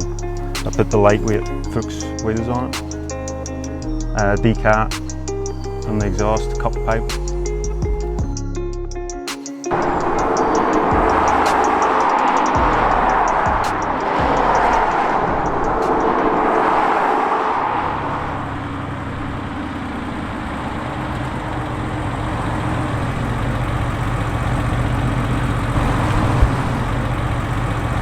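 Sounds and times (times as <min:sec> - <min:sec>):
rushing sound: 0:09.6 - 0:23.3, 0:25.7 - 0:28.0
car engine running: 0:09.7 - 0:28.0.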